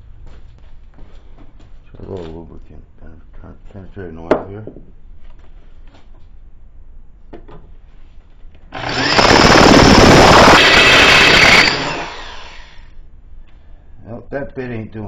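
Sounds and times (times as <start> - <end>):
drill bit grinding on steel: 8.7 - 12.8.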